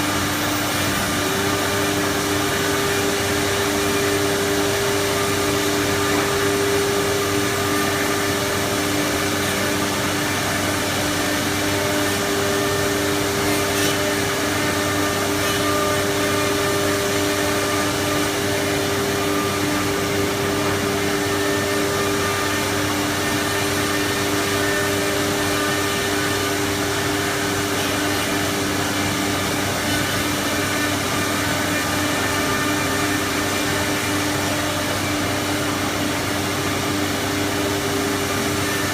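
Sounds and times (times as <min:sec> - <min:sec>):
wood router whining: 0:00.0 - 0:38.9.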